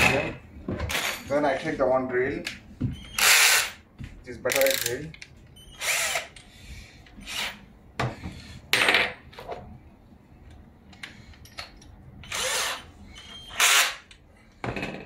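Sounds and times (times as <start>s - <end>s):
electric drill bursts: 3.1s - 3.8s, 5.8s - 6.3s, 13.5s - 14.0s.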